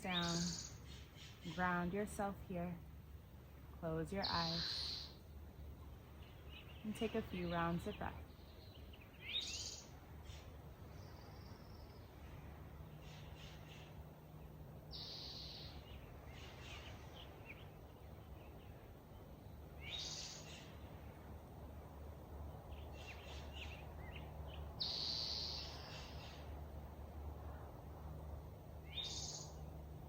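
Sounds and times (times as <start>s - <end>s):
faint low hum: 0.0s - 30.0s
bird repeating high phrase: 4.2s - 5.0s
faint bird chirps: 4.2s - 5.2s, 14.9s - 17.7s, 22.8s - 26.5s.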